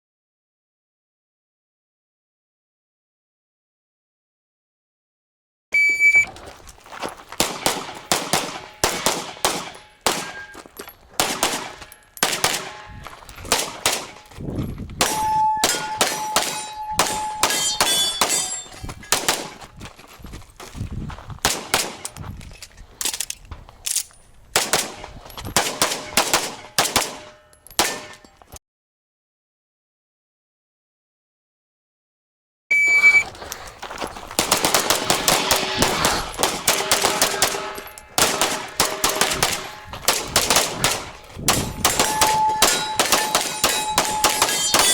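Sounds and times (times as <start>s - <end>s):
shot timer beep: 5.8s - 6.3s, 15.1s - 17.6s, 32.7s - 33.3s, 41.9s - 44.8s
pistol shots: 7.4s - 10.6s, 11.2s - 14.3s, 15.0s - 19.6s, 21.4s - 22.1s, 24.6s - 28.2s, 34.4s - 44.9s
steel targets ringing: 8.5s - 10.8s, 15.0s - 19.2s, 34.9s - 40.1s, 40.8s - 44.9s.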